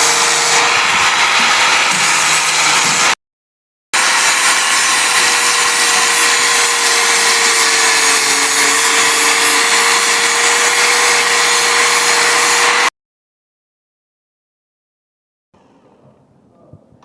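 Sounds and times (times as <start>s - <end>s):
metalworking power tool whining: 0.0s - 3.2s, 4.0s - 12.9s.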